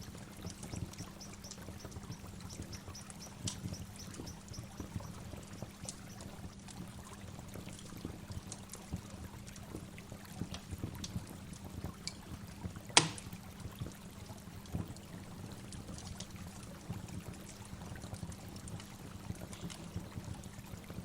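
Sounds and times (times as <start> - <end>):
sharp click: 13.0 - 13.3.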